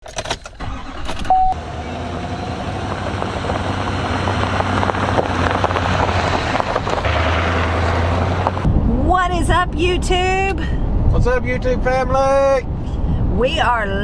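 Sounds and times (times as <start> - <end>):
car interior road noise drone: 0.6 - 11.2
short high beep: 1.3 - 1.6.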